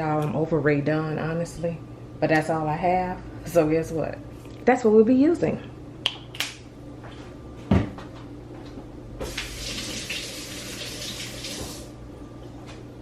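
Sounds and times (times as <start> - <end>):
water running: 9.2 - 12.0.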